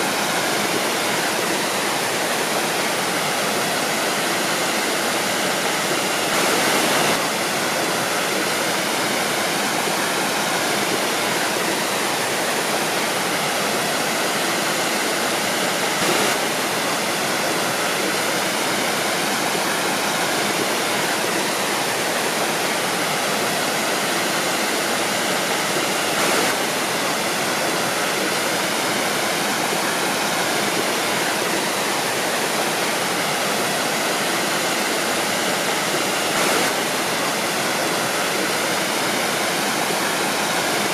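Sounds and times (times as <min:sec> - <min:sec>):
waterfall roaring: 0:00.0 - 0:40.9.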